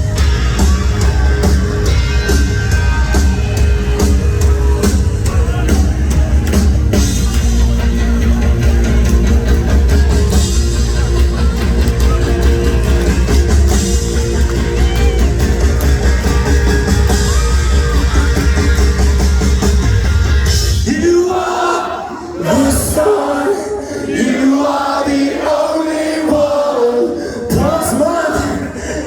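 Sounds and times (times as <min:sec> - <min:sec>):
bass guitar: 0:00.0 - 0:20.9
drum kit: 0:00.0 - 0:21.1.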